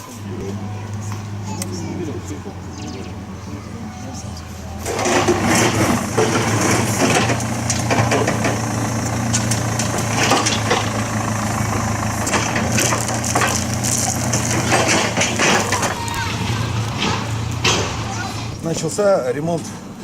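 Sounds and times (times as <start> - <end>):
construction machine engine running: 0.0 - 20.0
crunching and cracking: 4.8 - 18.5.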